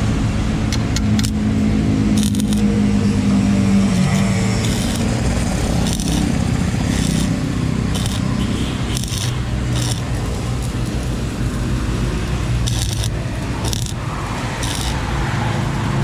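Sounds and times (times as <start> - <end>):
motorcycle engine running: 0.6 - 16.0
short clicks or scrapes: 2.2 - 2.7, 4.0 - 5.2, 5.8 - 10.2, 12.7 - 14.0, 14.6 - 15.4.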